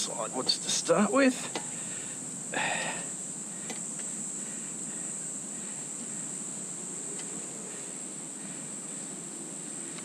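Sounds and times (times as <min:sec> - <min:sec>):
insects droning: 0:00.0 - 0:10.0.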